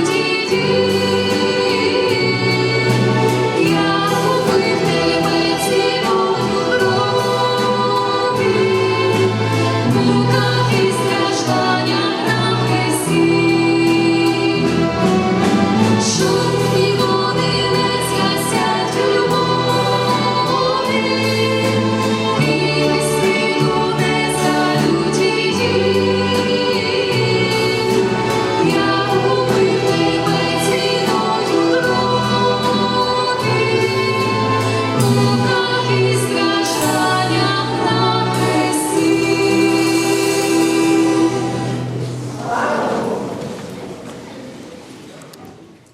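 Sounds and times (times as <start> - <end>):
choir singing a hymn: 0.0 - 43.7
orchestra accompanying: 0.0 - 44.7.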